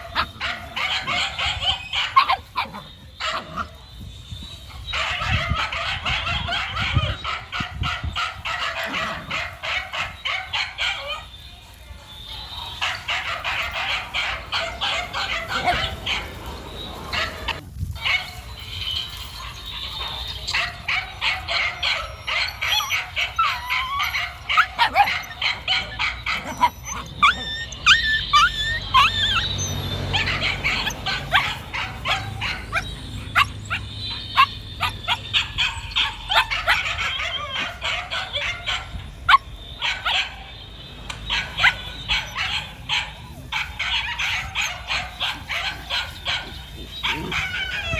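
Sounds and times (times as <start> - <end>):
dog yipping and barking: 0.0 - 11.4, 12.2 - 47.9
dog whining: 19.2 - 37.8, 45.9 - 47.9.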